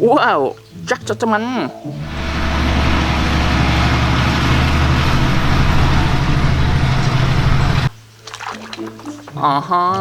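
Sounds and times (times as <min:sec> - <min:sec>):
machine low drone with hiss: 0:02.0 - 0:08.0.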